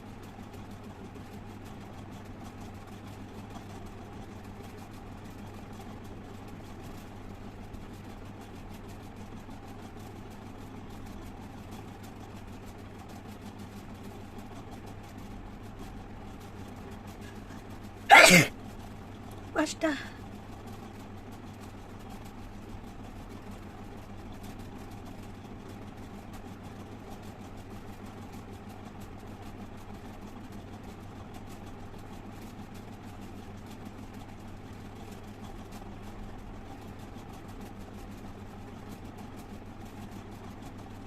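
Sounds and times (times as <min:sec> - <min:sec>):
person sneezing: 0:18.1 - 0:18.5.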